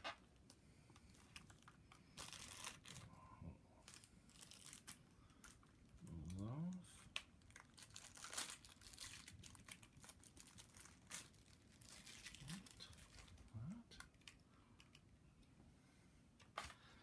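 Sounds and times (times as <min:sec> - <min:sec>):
plastic packaging crinkling: 0:01.0 - 0:03.1, 0:03.8 - 0:15.0.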